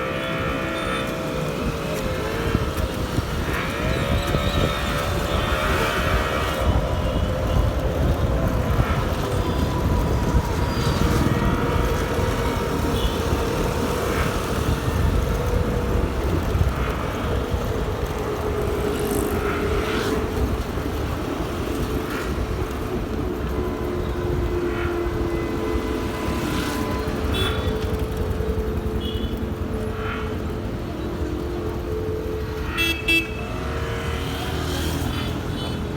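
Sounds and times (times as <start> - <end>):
synthetic scooter motor tone: 0.0 - 35.9.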